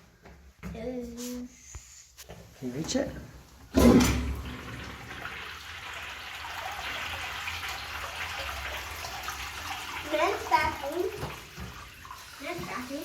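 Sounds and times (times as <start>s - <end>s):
urinal flushing: 3.6s - 13.0s.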